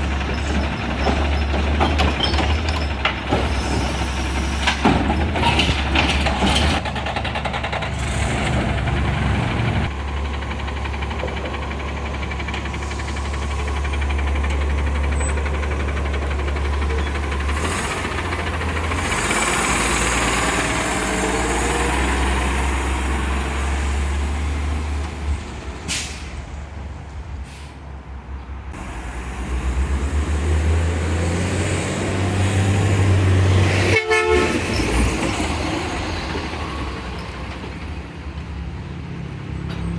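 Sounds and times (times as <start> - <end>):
garbage truck engine rumble: 0.0 - 27.6, 28.6 - 39.9
air brakes hissing: 25.9 - 26.5, 27.4 - 28.0.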